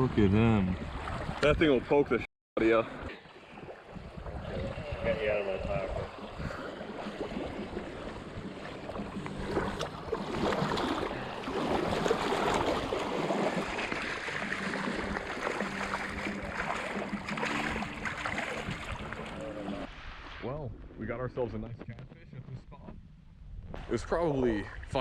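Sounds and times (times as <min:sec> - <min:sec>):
wind on microphone: 0:00.0 - 0:01.9, 0:03.5 - 0:25.0
water lapping at shoreline: 0:00.0 - 0:20.0.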